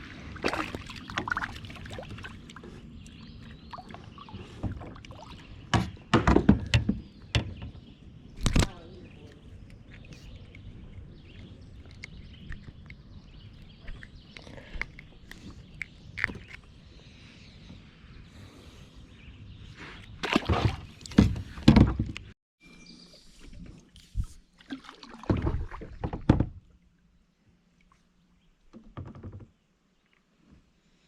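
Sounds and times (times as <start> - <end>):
water sloshing and splashing: 0.0 - 16.6, 20.1 - 22.3, 23.2 - 27.0.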